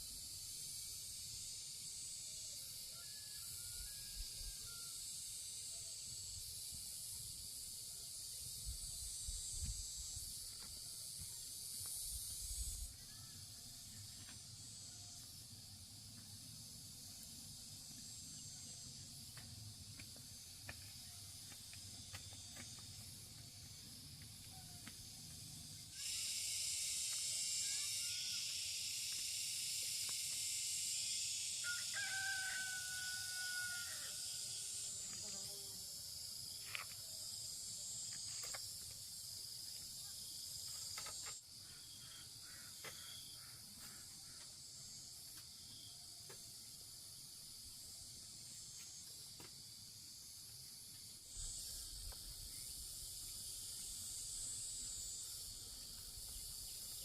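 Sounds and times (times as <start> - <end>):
high-pitched insect chorus: 0.0 - 57.0
rooster crowing: 2.9 - 5.0, 31.6 - 34.3.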